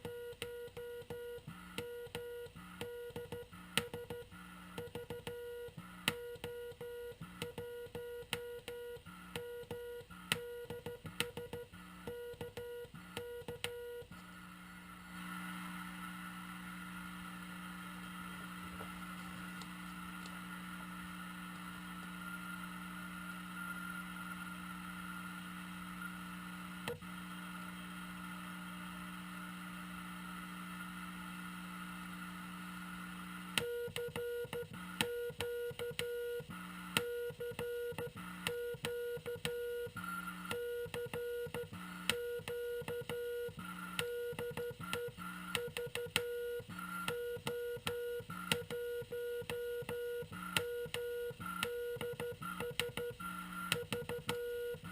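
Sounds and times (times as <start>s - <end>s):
radio receiver hiss and hum: 0.0s - 54.9s
morse code tone: 33.6s - 54.9s.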